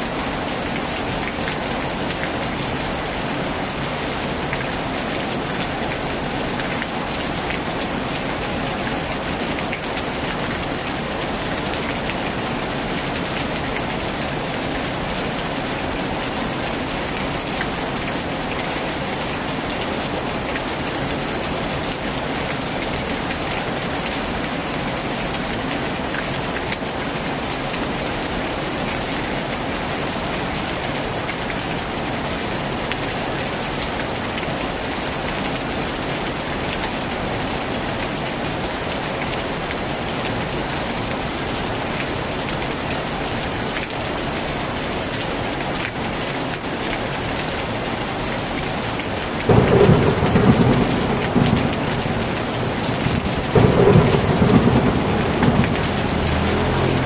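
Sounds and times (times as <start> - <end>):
heavy rain on a tin roof: 0.0 - 57.0.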